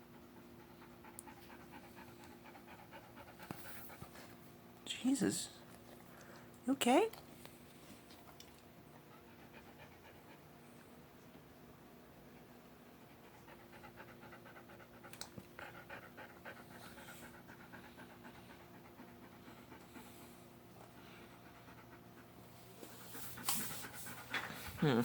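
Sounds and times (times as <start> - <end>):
dog panting fast: 0.0 - 4.4, 12.3 - 25.0
low steady hum: 0.0 - 25.0.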